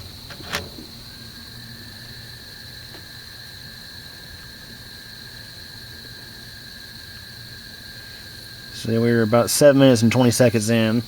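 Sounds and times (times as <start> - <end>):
high-pitched cricket trill: 0.0 - 11.0
lower cricket trill: 0.0 - 11.0.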